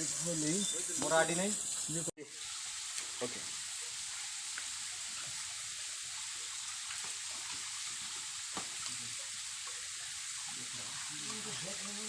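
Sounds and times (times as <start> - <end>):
waterfall hissing: 0.0 - 12.0.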